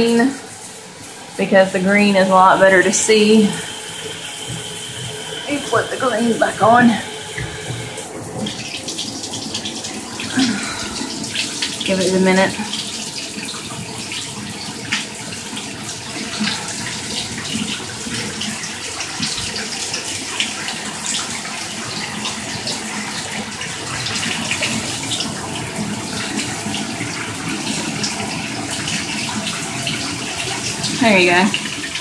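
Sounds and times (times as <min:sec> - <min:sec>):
shower head spraying water: 0:00.0 - 0:13.4.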